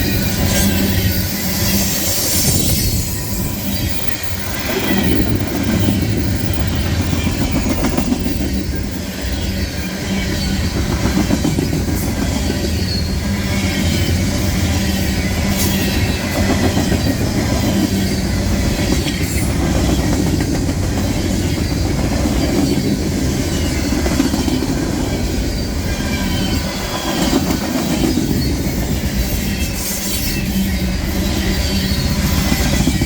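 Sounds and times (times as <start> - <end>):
high wheel squeals: 0.0 - 11.0, 25.1 - 33.0
train wheels rumbling on rails: 0.0 - 33.0.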